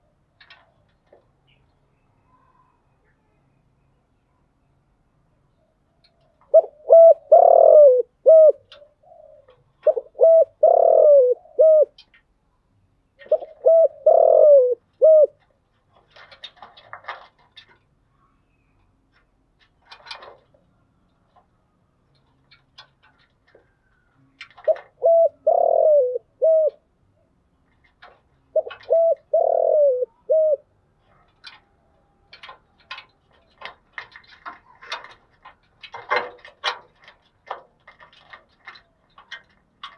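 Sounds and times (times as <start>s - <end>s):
faint scattered clicks: 0.4s - 1.8s, 11.9s - 12.4s, 31.0s - 39.9s
dove cooing: 6.4s - 12.0s, 13.2s - 15.4s, 24.2s - 27.3s, 28.0s - 31.6s.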